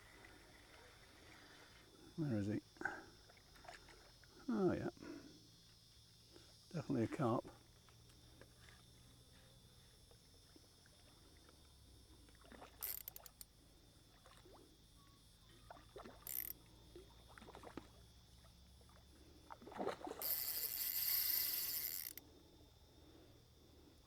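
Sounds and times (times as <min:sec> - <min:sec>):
fishing line rushing noise: 0:19.9 - 0:22.2.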